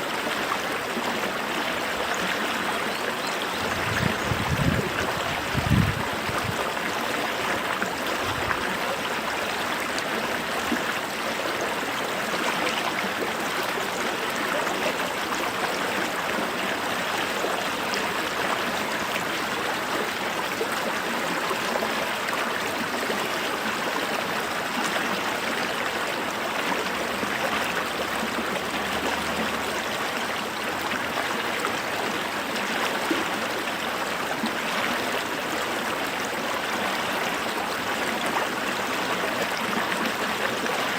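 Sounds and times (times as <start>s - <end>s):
creek flowing over rocks: 0.0s - 40.9s.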